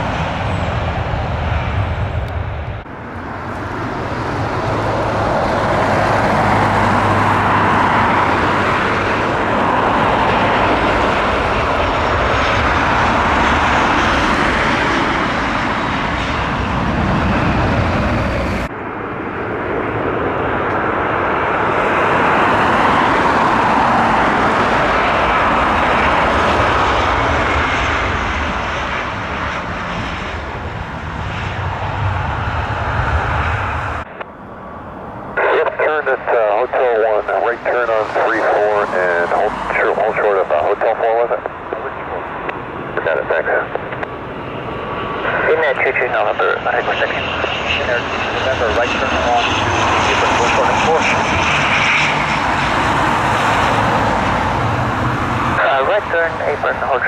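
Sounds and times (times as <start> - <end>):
jet airliner engines roaring: 0.0 - 57.0.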